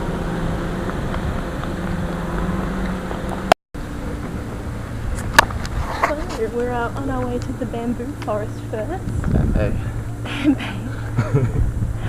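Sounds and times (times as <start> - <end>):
vehicle rumble from inside: 0.0 - 12.0.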